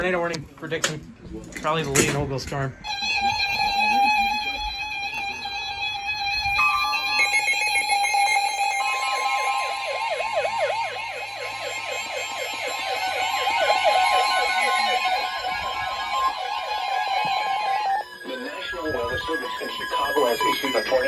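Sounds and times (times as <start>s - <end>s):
steady electronic alarm tone: 2.8s - 21.0s
warbling siren-like alarm: 2.8s - 21.0s
weather radio warning tone: 6.6s - 7.8s, 8.4s - 21.0s.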